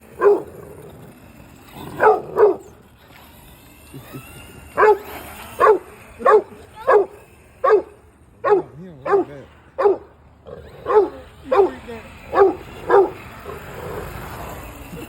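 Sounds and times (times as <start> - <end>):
dog barking: 0.2 - 0.5, 2.0 - 2.6, 4.8 - 10.1, 10.8 - 13.2.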